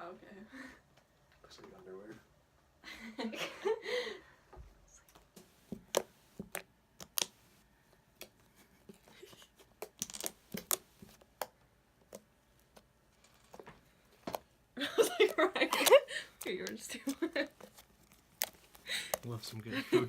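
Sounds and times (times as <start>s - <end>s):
slime squished by hand: 9.8s - 12.7s.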